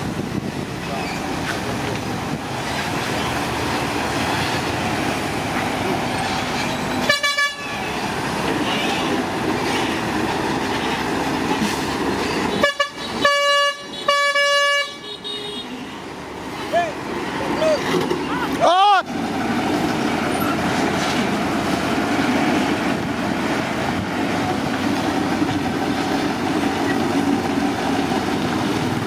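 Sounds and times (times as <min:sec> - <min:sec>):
heavy vehicle engine running: 0:00.0 - 0:13.4, 0:16.0 - 0:29.0
vehicle horn blasts: 0:07.0 - 0:07.8, 0:12.5 - 0:16.0.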